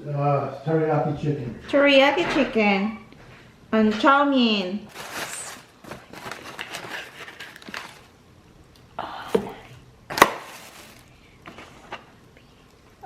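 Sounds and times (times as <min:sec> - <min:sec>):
food containers and bag rustling: 0:04.9 - 0:08.2, 0:09.5 - 0:12.2.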